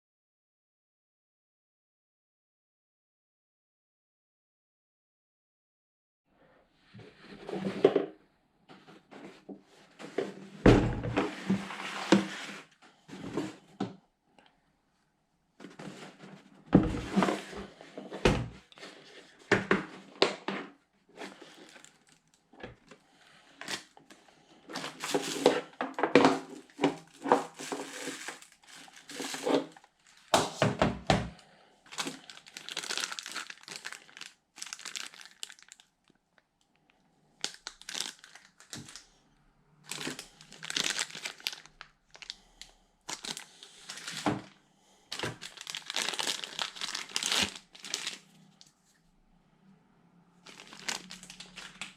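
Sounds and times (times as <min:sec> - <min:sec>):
packaging crinkling and rustling: 0:21.2 - 0:36.8, 0:37.4 - 0:39.1, 0:39.8 - 0:48.7, 0:50.4 - 0:51.9.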